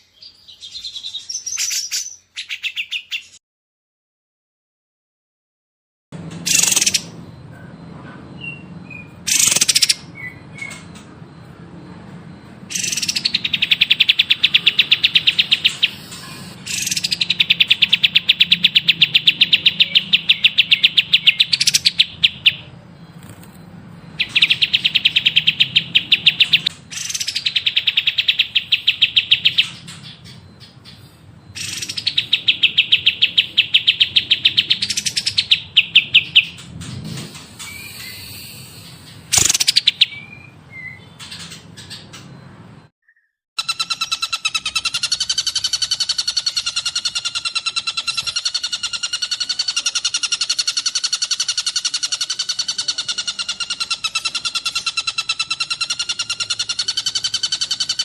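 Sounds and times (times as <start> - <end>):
bird call: 6.4 - 11.4, 12.7 - 36.6, 37.3 - 42.4, 43.0 - 58.0
songbird rapid trills: 9.3 - 10.8.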